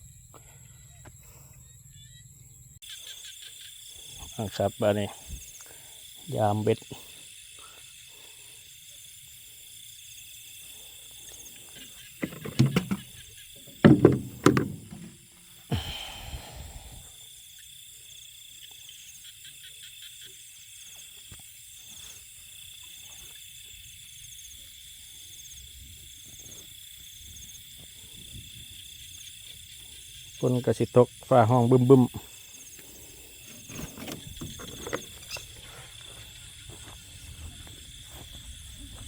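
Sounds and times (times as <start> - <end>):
crickets and insects chirring: 0.0 - 39.0
loud short knocks: 12.2 - 15.2.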